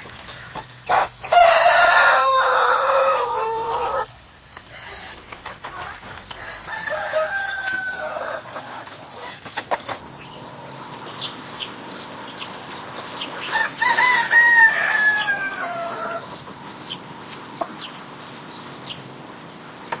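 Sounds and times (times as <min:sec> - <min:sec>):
rooster crowing: 0:00.9 - 0:04.1, 0:06.3 - 0:08.8, 0:13.4 - 0:16.3.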